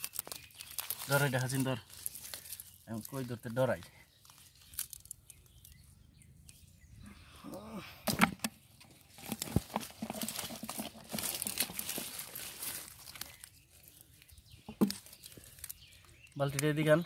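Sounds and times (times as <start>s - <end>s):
rustling and splashing: 0.0s - 3.5s, 8.1s - 16.0s.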